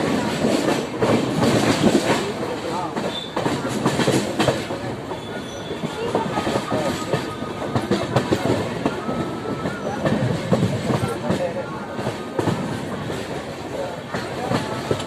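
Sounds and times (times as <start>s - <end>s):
train wheels clacking over rail joints: 0.0s - 15.0s
faint thin wheel squeal: 5.1s - 6.1s.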